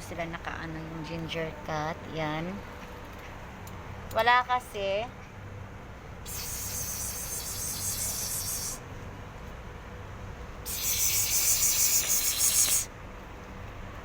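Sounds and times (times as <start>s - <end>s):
insects trilling: 6.2s - 8.8s, 10.6s - 12.9s.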